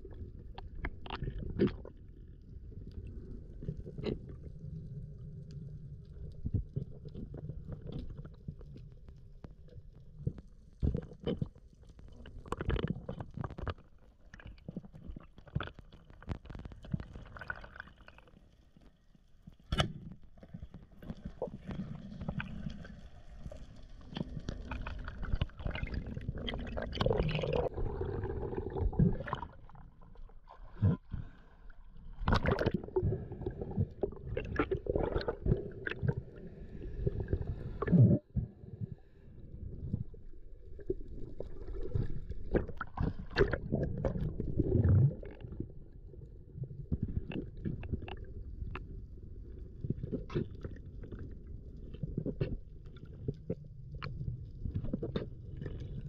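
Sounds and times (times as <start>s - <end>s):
water gurgling and sloshing: 0.0s - 56.0s.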